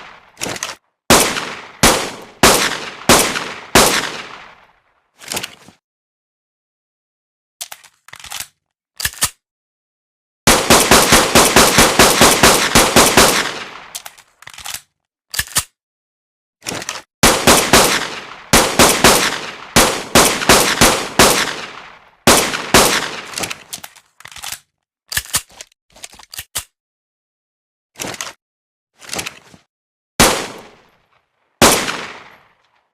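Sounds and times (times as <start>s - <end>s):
pistol shots: 0.0s - 4.6s, 10.5s - 14.0s, 17.2s - 23.7s, 30.2s - 30.8s, 31.6s - 32.4s.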